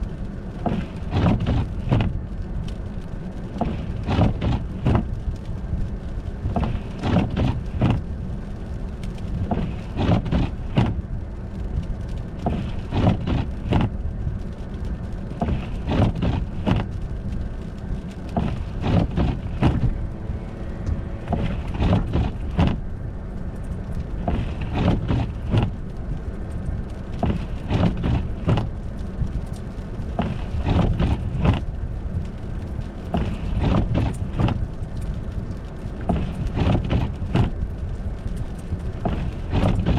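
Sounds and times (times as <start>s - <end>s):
car rumbling on icy road: 0.0s - 39.9s
knocks and crunches: 0.6s - 2.2s, 3.5s - 5.2s, 6.4s - 8.1s, 9.2s - 11.0s, 12.4s - 14.0s, 15.3s - 17.0s, 18.2s - 20.1s, 20.9s - 22.9s, 24.2s - 25.8s, 27.2s - 28.8s, 29.5s - 31.7s, 33.1s - 35.1s, 36.0s - 37.7s, 38.3s - 39.9s.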